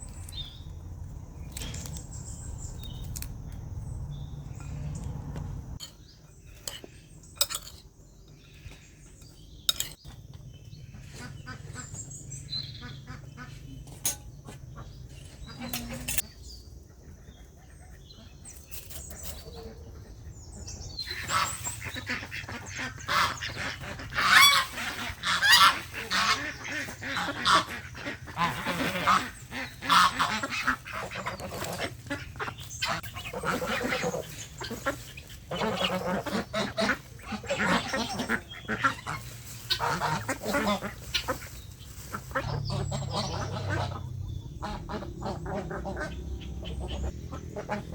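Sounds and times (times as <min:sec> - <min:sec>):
poultry calling: 0:10.6 - 0:16.3, 0:19.2 - 0:47.9.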